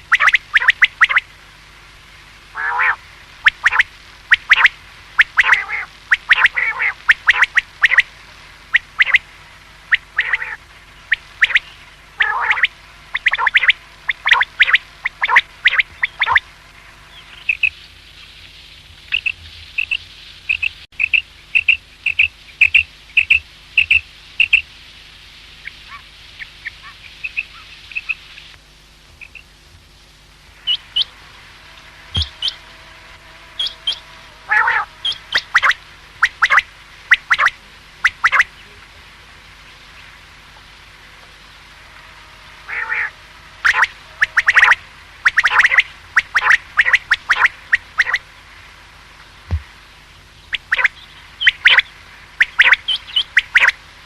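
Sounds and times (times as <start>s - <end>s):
quail calling: 0.0s - 1.3s, 2.5s - 16.5s, 17.1s - 17.8s, 25.6s - 28.4s, 31.8s - 38.7s, 42.6s - 48.3s, 50.5s - 53.8s
faint steady hum: 0.0s - 54.0s.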